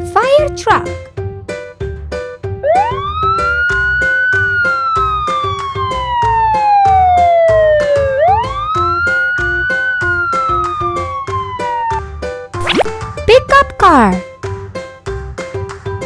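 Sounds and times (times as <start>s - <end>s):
children's music with steady beat: 0.0s - 1.0s, 13.3s - 14.2s.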